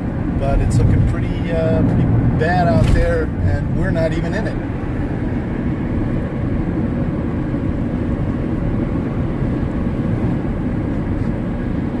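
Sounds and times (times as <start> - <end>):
vehicle driving heard from inside: 0.0 - 12.0.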